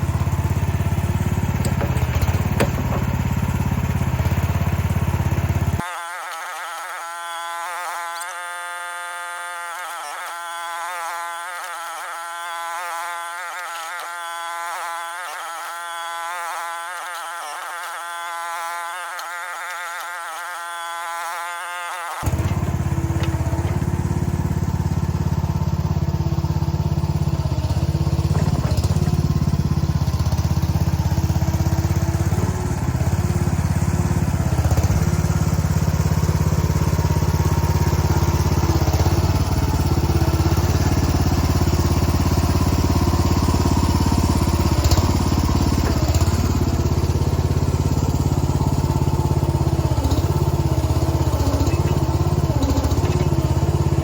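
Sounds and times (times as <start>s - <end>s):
excavator engine running: 0.0s - 5.8s, 22.2s - 54.0s.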